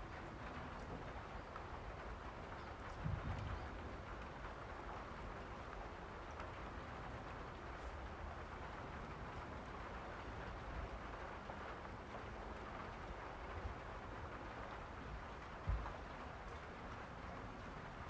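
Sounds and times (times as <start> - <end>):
steady rain falling: 0.0 - 18.0.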